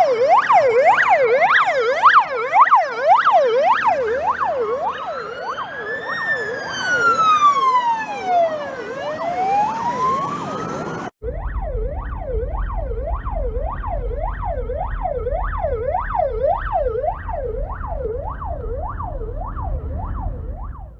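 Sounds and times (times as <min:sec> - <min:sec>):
police siren wail: 0:00.0 - 0:20.9
police siren yelp: 0:00.0 - 0:20.9
low rumble: 0:11.2 - 0:20.9.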